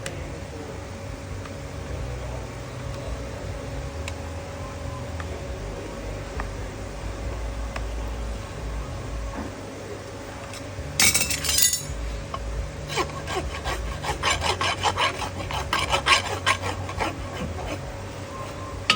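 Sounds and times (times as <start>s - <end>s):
tools clinking: 11.0s - 12.0s
hand tools scraping a hoof: 12.8s - 18.6s.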